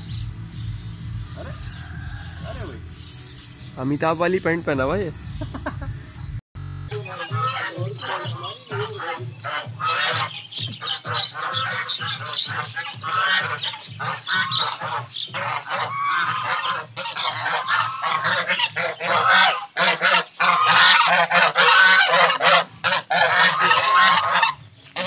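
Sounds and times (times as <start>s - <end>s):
geese honking: 0.0s - 25.0s.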